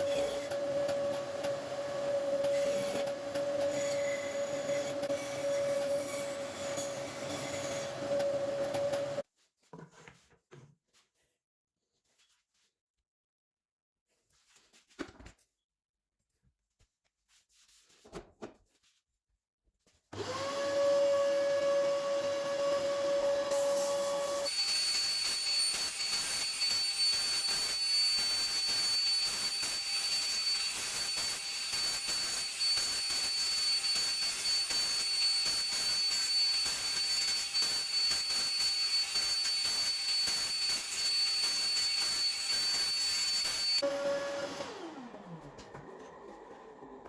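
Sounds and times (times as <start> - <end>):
power tool whining under load: 0.0 - 9.2, 20.2 - 47.0.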